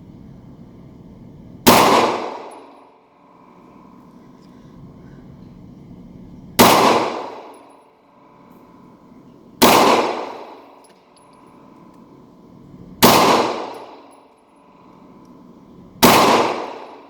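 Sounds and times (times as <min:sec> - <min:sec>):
pistol shots with echo: 0:01.7 - 0:02.8, 0:06.6 - 0:07.6, 0:09.6 - 0:10.8, 0:13.0 - 0:14.1, 0:16.0 - 0:17.0.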